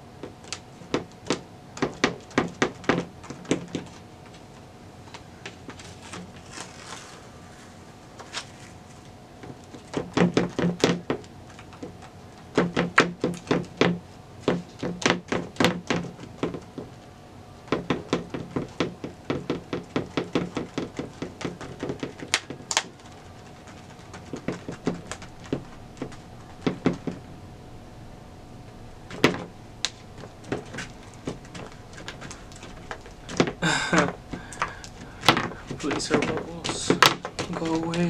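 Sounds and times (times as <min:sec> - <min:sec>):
hands patting grip tape: 0:00.4 - 0:04.4, 0:17.7 - 0:27.2, 0:29.1 - 0:38.0.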